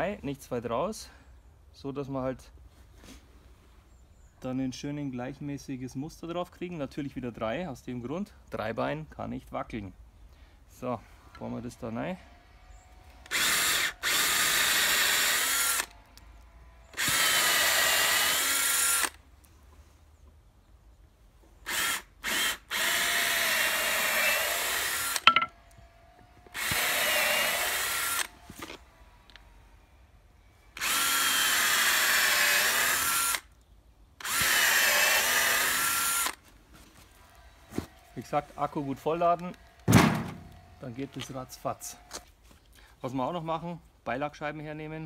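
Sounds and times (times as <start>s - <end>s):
cordless drill boring into wood: 13.2s - 19.2s, 21.6s - 25.8s, 26.4s - 29.5s, 30.7s - 33.6s, 34.2s - 36.4s.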